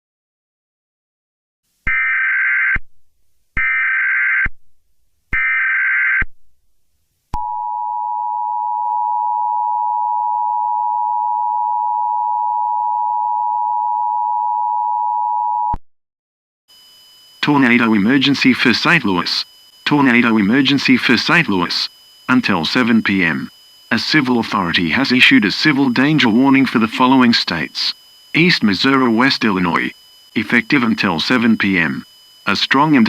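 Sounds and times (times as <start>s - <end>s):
digital data header bursts: 17.2s - 33.0s
two-tone attention signal: 19.9s - 33.0s.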